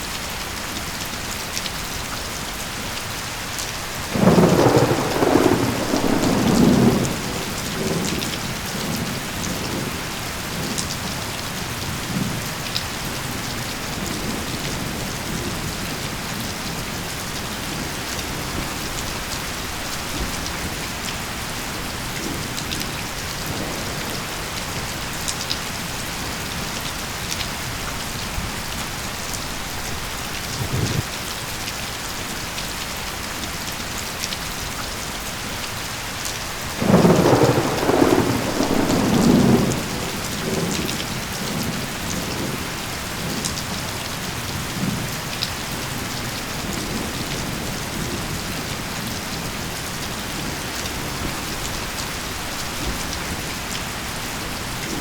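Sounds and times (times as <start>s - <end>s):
steady rain falling: 0.0s - 55.0s
thunder rumbling: 4.1s - 10.8s, 13.9s - 31.1s, 36.8s - 43.8s.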